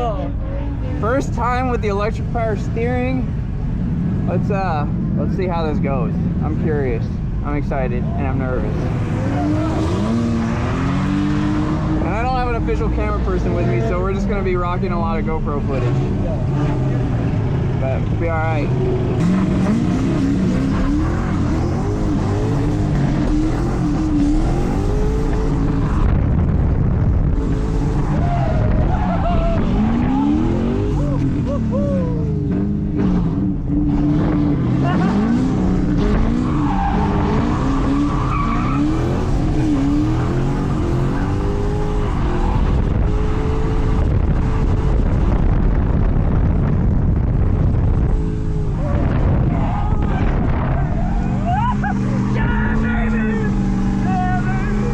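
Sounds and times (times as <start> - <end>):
car engine revving: 0.0 - 54.9
wind buffeting on microphone: 21.3 - 34.7, 39.0 - 51.9.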